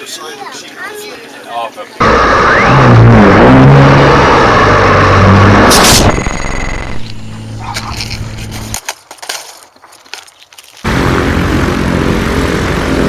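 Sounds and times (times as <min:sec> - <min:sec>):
engine humming: 0:02.0 - 0:08.8, 0:10.8 - 0:13.0
loud engine noise: 0:02.0 - 0:08.8, 0:10.8 - 0:13.0.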